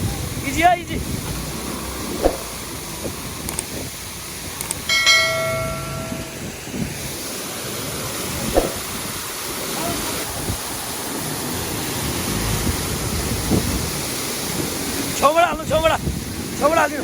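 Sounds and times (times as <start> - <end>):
steady rushing noise: 0.0 - 17.0
bell-like metallic strike: 4.9 - 6.5.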